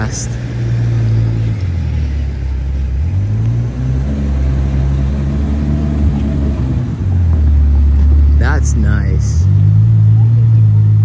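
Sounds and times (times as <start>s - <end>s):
car engine at low revs: 0.0s - 11.0s.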